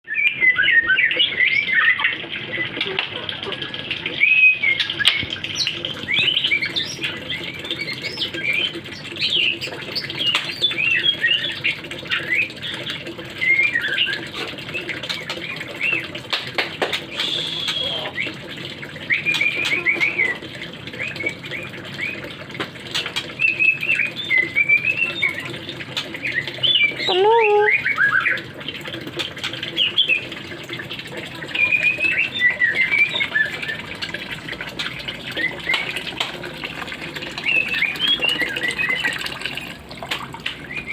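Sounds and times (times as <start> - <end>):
songbird singing whistles: 0.0 - 2.8, 17.1 - 18.4, 19.1 - 20.4, 23.4 - 25.5, 31.6 - 33.9, 37.4 - 39.3.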